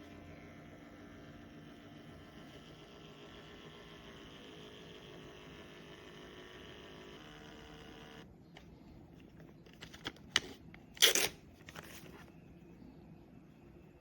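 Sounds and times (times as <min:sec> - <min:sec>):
electrical hum: 0:00.0 - 0:09.7
paper rustling: 0:11.5 - 0:12.4.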